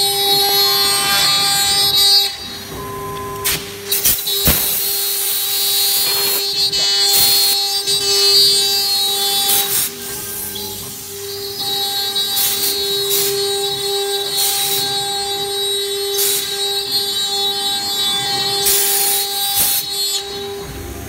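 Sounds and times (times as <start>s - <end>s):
router spindle whining: 0.0s - 4.4s.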